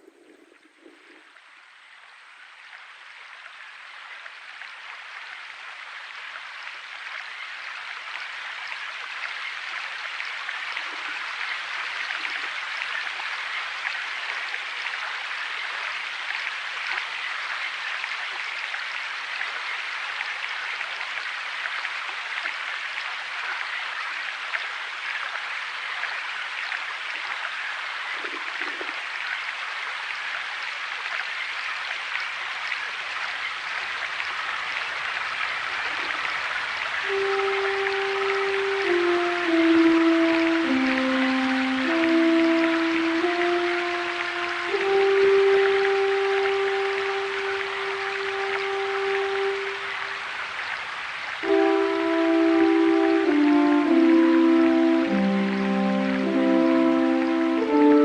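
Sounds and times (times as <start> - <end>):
hiss of running water: 32.7 - 58.0.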